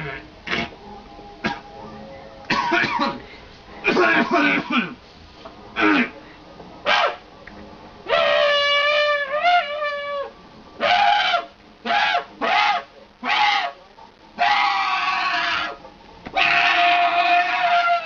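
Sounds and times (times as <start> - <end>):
person making strained pitched cries: 8.1 - 13.8, 14.4 - 15.8, 16.4 - 18.0.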